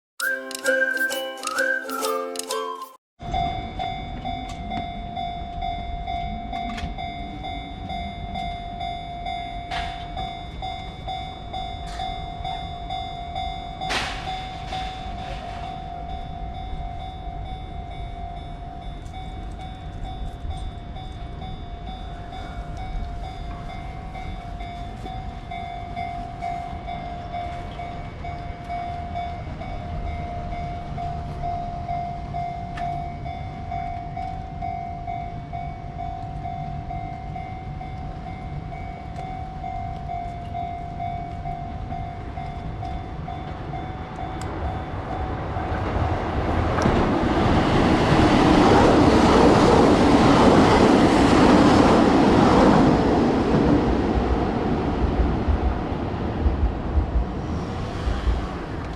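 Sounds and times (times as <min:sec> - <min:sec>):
level crossing bell ringing: 0:00.2 - 0:45.5
train running over rails: 0:00.2 - 0:58.9.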